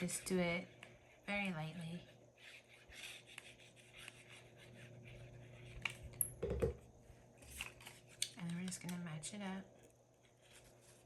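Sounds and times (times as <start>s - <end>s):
paper rubbing and scratching: 1.9s - 5.8s.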